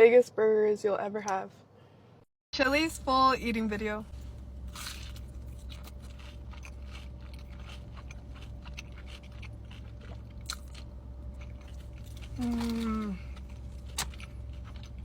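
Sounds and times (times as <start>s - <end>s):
steady low hum: 0.0s - 15.0s
crunching and chewing food: 4.1s - 15.0s.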